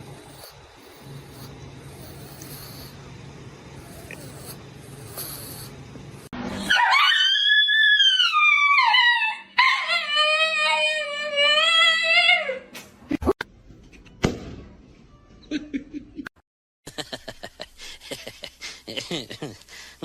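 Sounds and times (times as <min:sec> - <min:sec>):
dog howling: 0:06.6 - 0:12.6.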